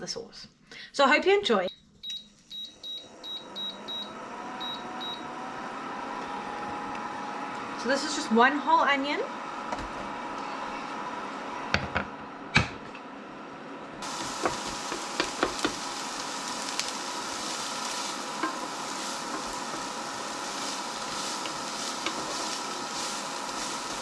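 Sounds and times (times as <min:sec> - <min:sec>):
onion sizzling in a pan: 0:14.0 - 0:24.0
stirring in a pan: 0:14.0 - 0:24.0.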